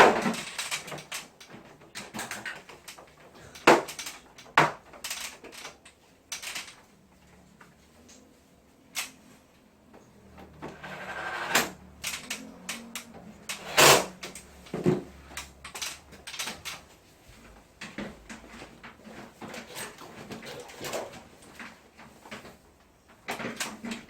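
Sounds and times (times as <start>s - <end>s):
objects clicking and knocking: 0.0s - 6.9s, 11.5s - 16.9s.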